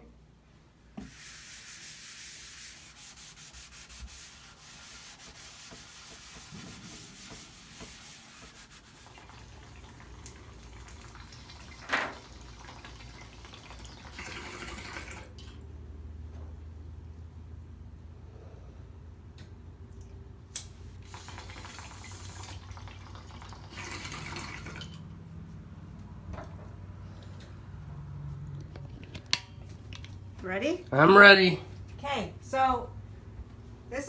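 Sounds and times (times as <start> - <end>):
cloth rag wiping surfaces: 1.0 - 9.8.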